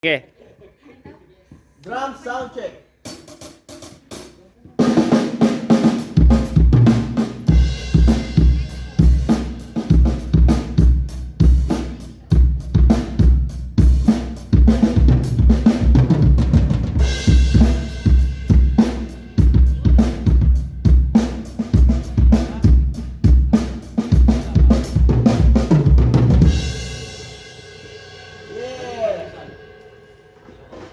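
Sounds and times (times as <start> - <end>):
snare drum: 3.1 - 26.8
cymbals: 3.1 - 30.9.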